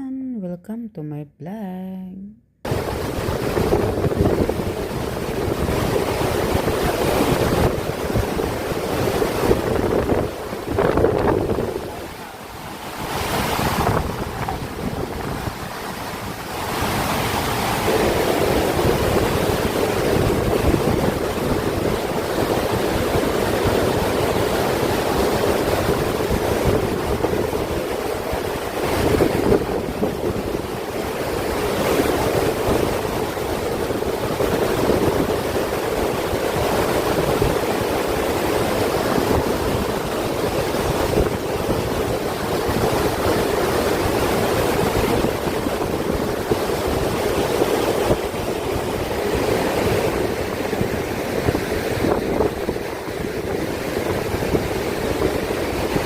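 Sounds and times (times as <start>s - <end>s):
water rushing: 2.7s - 56.0s
wind buffeting microphone: 2.7s - 56.0s.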